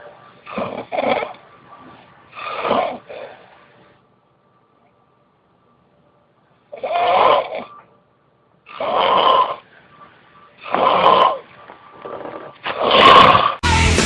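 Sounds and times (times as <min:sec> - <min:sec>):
person snoring loudly: 0:02.3 - 0:03.4, 0:06.8 - 0:07.7, 0:08.7 - 0:09.7, 0:10.6 - 0:11.5, 0:12.2 - 0:14.0.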